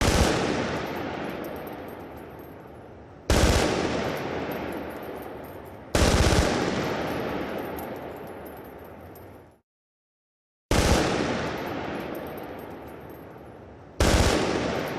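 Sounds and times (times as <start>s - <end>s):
long gunfire echo: 0.0s - 1.6s, 3.3s - 4.7s, 6.0s - 7.5s, 10.7s - 12.2s, 14.0s - 14.9s
machine gun bursts: 6.0s - 7.2s, 14.0s - 14.9s.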